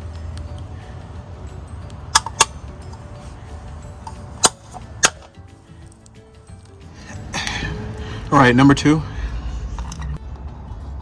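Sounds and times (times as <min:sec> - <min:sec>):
wheel cap snapping into place: 0:02.2 - 0:02.6.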